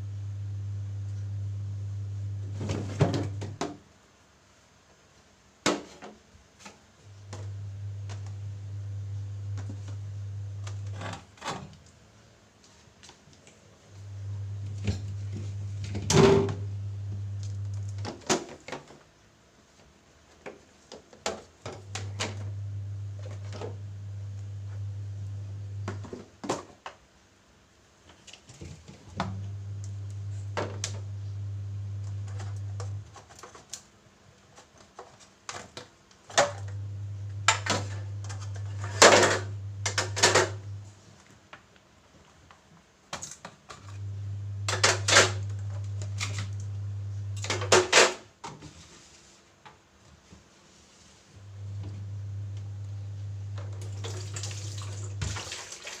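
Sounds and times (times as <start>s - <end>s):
low hum: 0.0s - 3.4s, 14.0s - 18.0s, 29.2s - 33.0s, 51.4s - 55.2s.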